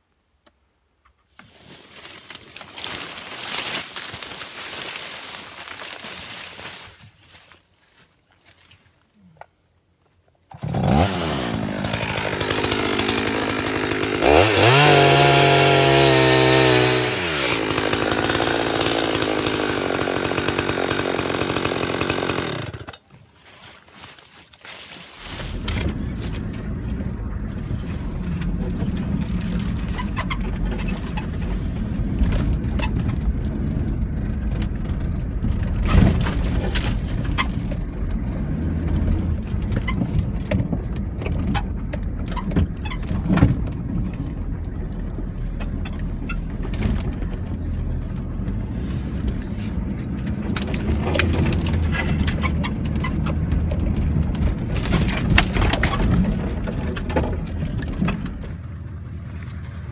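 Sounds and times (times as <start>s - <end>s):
vehicle engine rumbling: 25.0s - 59.9s
knocks and rattles: 25.5s - 48.6s, 50.1s - 58.6s.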